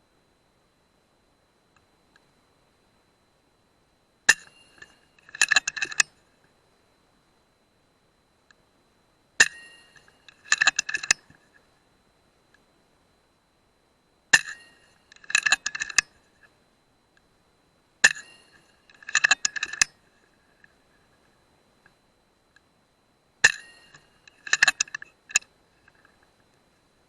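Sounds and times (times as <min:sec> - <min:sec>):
faint high whine: 0:00.0 - 0:27.0
metallic clicks and clinks: 0:04.3 - 0:06.0, 0:09.4 - 0:11.2, 0:14.4 - 0:16.1, 0:18.0 - 0:19.9, 0:23.4 - 0:26.2.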